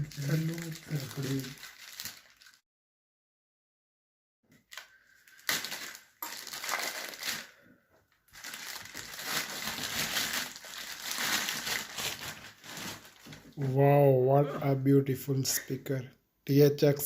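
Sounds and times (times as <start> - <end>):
plastic wrap crackling: 0.0 - 2.6, 4.6 - 7.7, 8.3 - 13.8.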